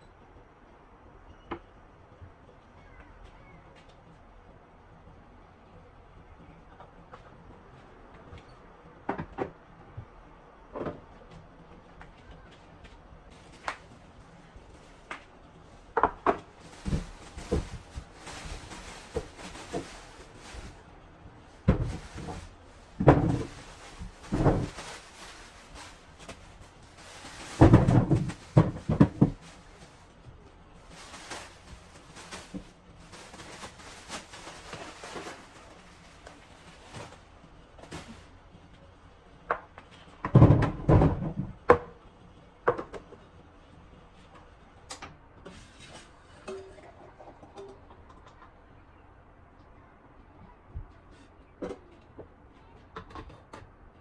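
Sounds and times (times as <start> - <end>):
kitchen items clattering: 15.8 - 20.9, 21.5 - 30.2, 30.8 - 38.3.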